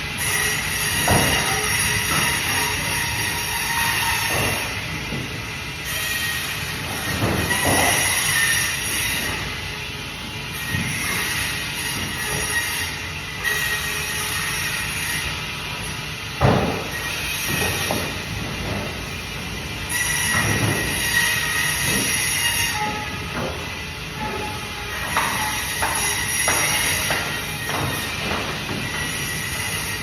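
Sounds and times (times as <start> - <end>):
bandsaw screeching: 19.9 - 23.3.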